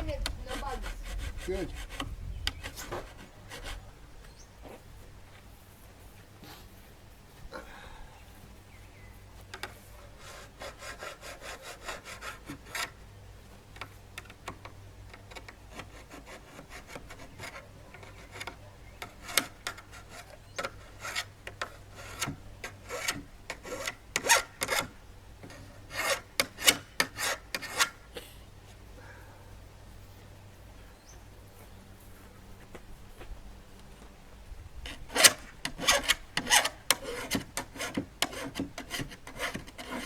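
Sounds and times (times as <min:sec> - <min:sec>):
rasping rubbing strokes: 0:00.0 - 0:03.9, 0:09.4 - 0:13.0, 0:15.1 - 0:28.0, 0:34.8 - 0:40.0.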